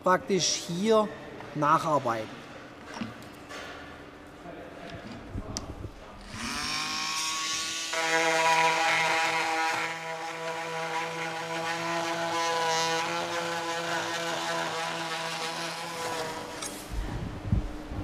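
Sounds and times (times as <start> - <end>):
oscillating multitool sawing wood: 6.3 - 16.8.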